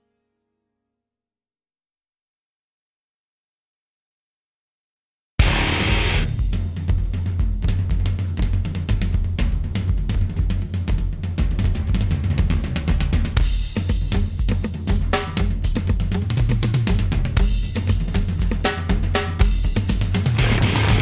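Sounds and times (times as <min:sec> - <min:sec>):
deep bass line: 0:05.4 - 0:06.6, 0:20.3 - 0:21.0
crash cymbal: 0:05.4 - 0:06.9, 0:19.4 - 0:21.0
drum kit playing a beat: 0:05.4 - 0:21.0.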